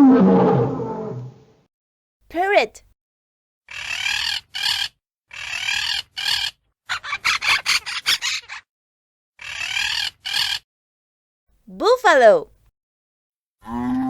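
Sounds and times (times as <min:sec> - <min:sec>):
parrot squawking: 0:03.7 - 0:08.6, 0:09.4 - 0:10.6.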